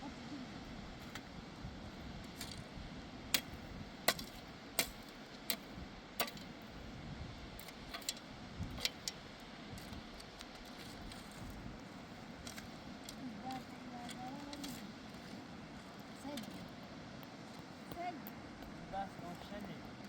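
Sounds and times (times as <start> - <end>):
steady background hiss: 0.0 - 20.0.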